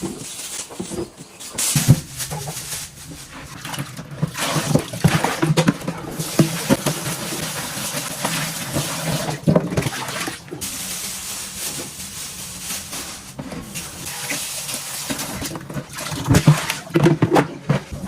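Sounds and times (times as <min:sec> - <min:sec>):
tap water running into sink: 0:03.6 - 0:10.8.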